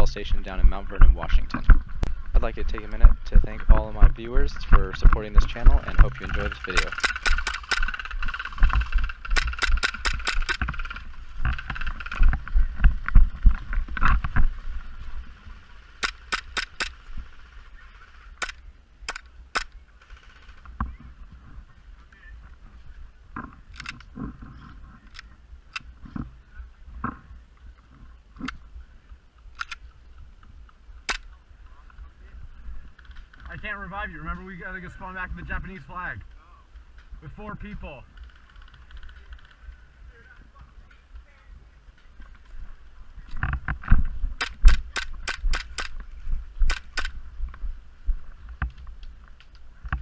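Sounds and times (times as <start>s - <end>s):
wind rumble on microphone: 0.0s - 16.0s, 20.6s - 37.3s, 38.0s - 50.0s
airsoft guns firing: 5.6s - 12.3s, 16.0s - 17.0s, 44.4s - 46.0s.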